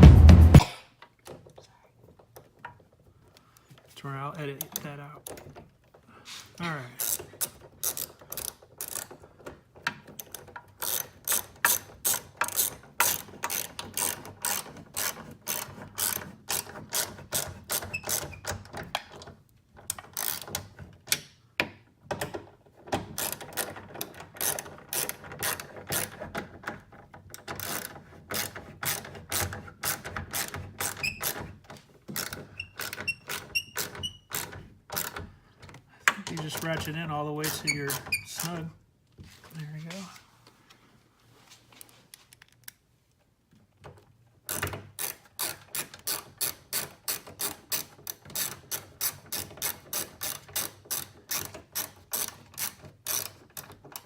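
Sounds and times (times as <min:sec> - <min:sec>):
ratchet wrench clicking: 0:07.0 - 0:09.2, 0:10.2 - 0:18.3, 0:20.0 - 0:20.6, 0:44.5 - 0:53.8.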